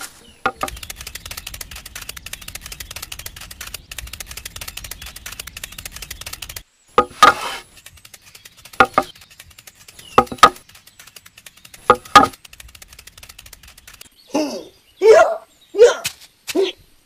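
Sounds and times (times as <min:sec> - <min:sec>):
small motor rattling: 0:00.5 - 0:06.6, 0:07.8 - 0:14.0
loud sharp knocks: 0:10.2 - 0:10.6.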